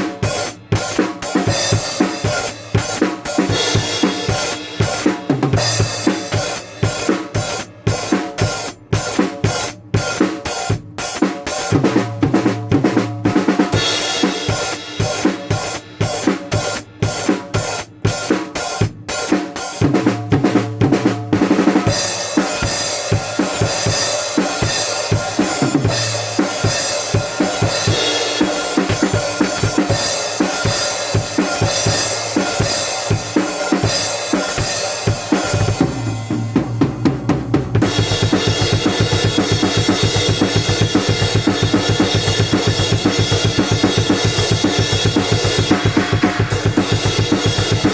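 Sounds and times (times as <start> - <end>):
drum kit hits: 21.3 - 47.9.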